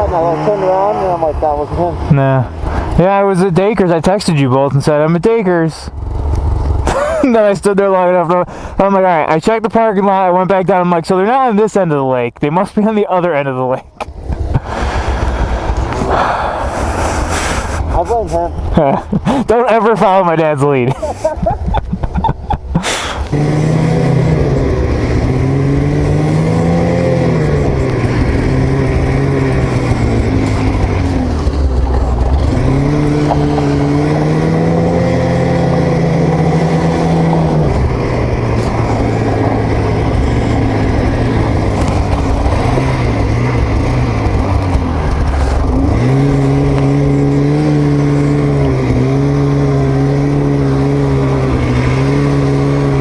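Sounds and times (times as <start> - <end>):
snowmobile engine running: 0.0 - 11.7, 12.8 - 53.0.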